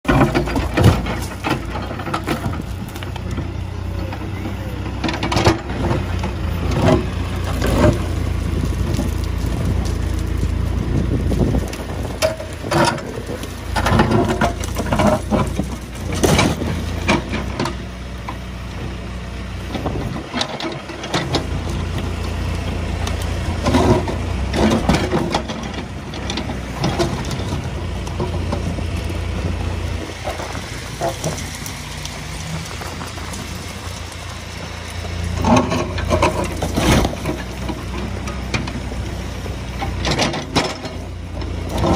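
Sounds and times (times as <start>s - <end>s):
backhoe engine drone: 0.0s - 41.9s
machine clanks and knocks: 0.1s - 3.5s, 4.8s - 8.1s, 11.6s - 17.8s, 39.7s - 41.9s.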